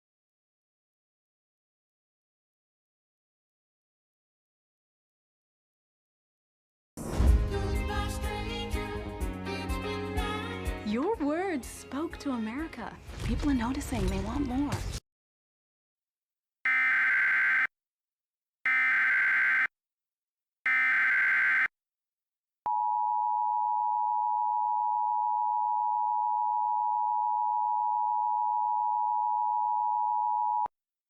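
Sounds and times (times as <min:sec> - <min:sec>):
data header tones: 0:16.7 - 0:17.7, 0:18.7 - 0:19.7, 0:20.7 - 0:21.7
two-tone alert signal: 0:16.7 - 0:17.7, 0:18.7 - 0:19.7, 0:20.7 - 0:21.7.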